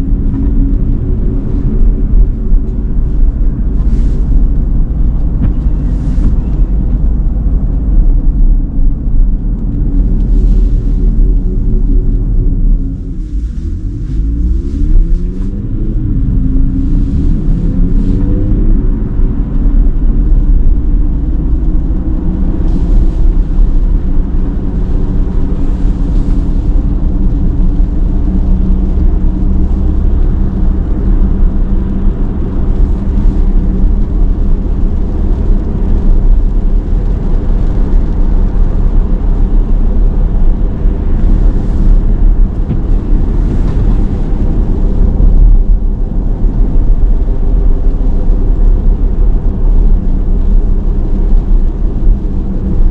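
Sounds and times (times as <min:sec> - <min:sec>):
road and tyre noise: 0:00.0 - 0:52.9
tyres hissing on wet road: 0:02.8 - 0:04.9, 0:05.6 - 0:06.7, 0:10.0 - 0:11.4, 0:12.8 - 0:19.0, 0:21.1 - 0:48.1.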